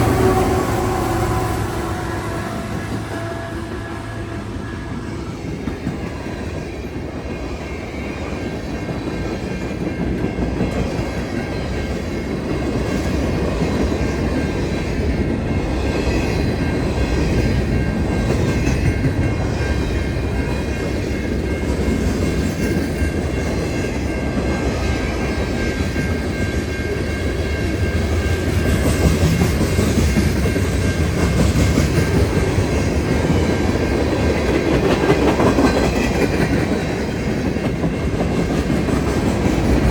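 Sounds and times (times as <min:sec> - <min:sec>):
freight train rumbling past: 0:00.0 - 0:39.9.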